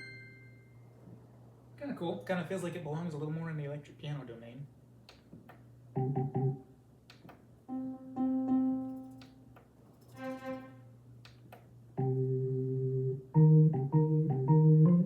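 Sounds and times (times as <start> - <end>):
digital piano notes and chord: 6.0 - 6.7, 7.7 - 9.4, 12.0 - 15.0.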